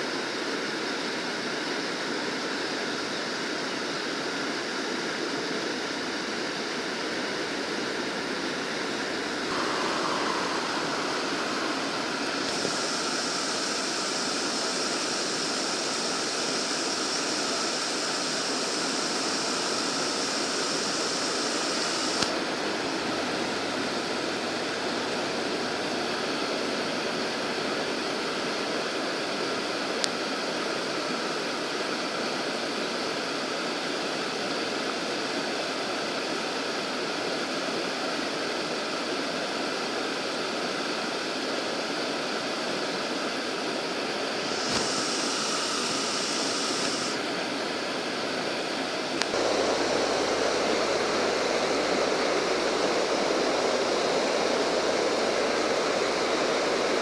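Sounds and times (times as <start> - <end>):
flowing water rushing: 4.9 - 29.8, 42.7 - 57.0
thin higher hiss: 6.2 - 28.7, 43.5 - 57.0.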